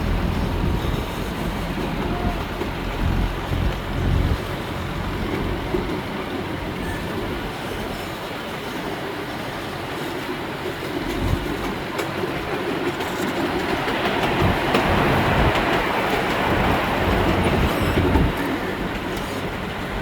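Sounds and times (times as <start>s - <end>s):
miniature train wheels clattering: 10.2s - 20.0s.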